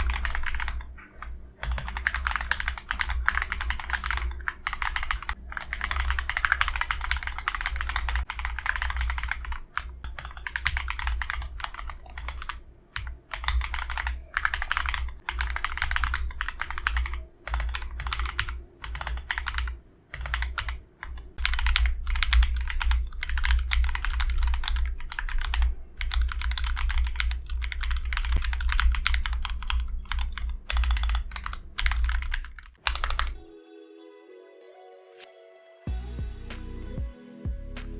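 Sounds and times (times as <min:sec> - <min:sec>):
mechanical keyboard typing: 0:00.0 - 0:33.4
soft music: 0:33.4 - 0:37.9.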